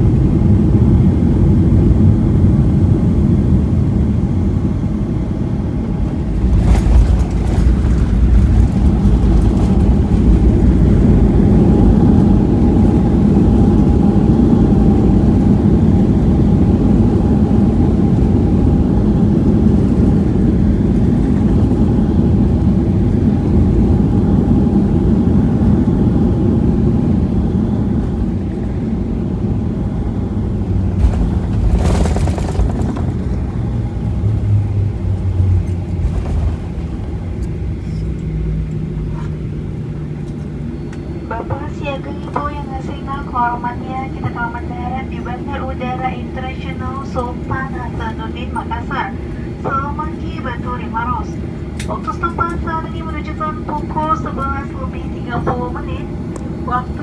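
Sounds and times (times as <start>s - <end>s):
airliner cabin rumble: 0.0s - 57.0s
steady hum: 26.8s - 57.0s
rattling clicks: 31.0s - 33.4s.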